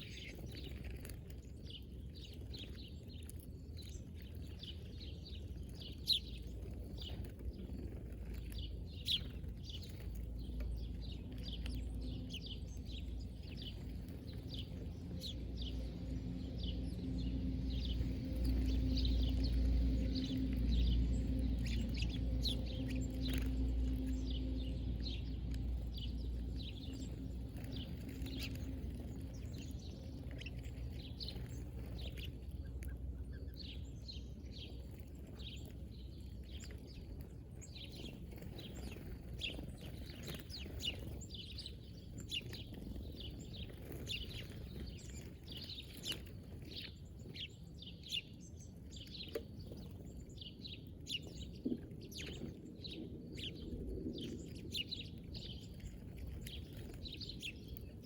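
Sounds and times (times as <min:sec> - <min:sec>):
birds chirping: 0:00.0 - 0:58.0
steady low rumble: 0:00.0 - 0:58.0.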